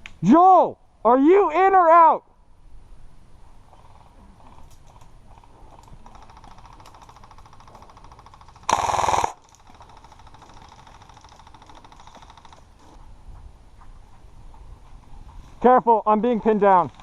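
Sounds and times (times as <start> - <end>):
airsoft guns firing full auto: 6.1 - 12.7
loud close gun burst: 8.6 - 9.4.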